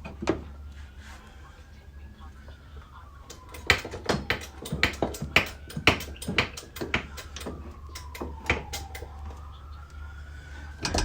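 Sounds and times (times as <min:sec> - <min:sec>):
hammer tapping on sheet metal: 0:03.3 - 0:09.1.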